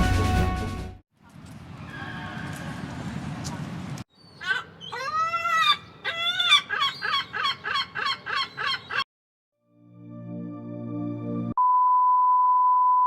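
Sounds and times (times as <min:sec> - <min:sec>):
pitched animal calls: 0:04.4 - 0:09.0.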